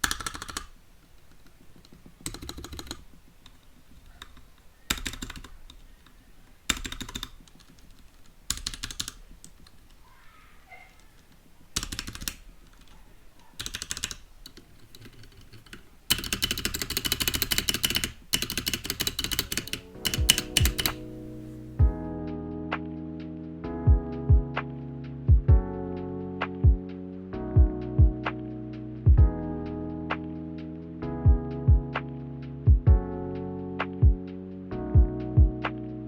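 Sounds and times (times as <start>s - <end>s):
typing on mechanical keyboard: 0.0s - 10.0s, 10.9s - 21.4s
music with deep thumps: 21.8s - 35.9s.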